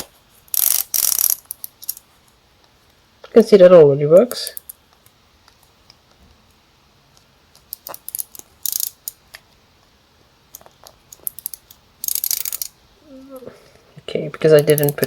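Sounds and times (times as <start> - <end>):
clock winding ratchet clicking: 0.5 - 2.0, 7.7 - 9.2, 11.1 - 12.7, 14.6 - 15.0.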